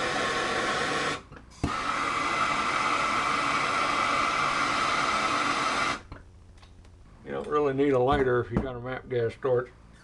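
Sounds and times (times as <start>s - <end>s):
gas torch hissing: 0.0s - 6.2s.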